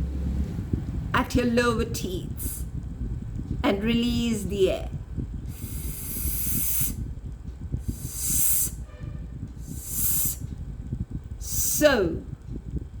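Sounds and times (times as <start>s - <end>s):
person hissing s sound: 5.5s - 7.0s, 7.8s - 8.9s, 9.6s - 10.4s, 11.4s - 11.8s.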